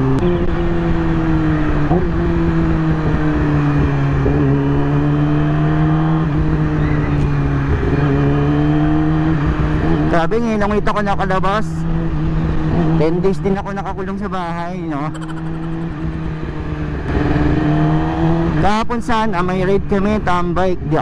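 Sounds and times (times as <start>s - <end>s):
motorcycle engine running: 15.1s - 18.0s.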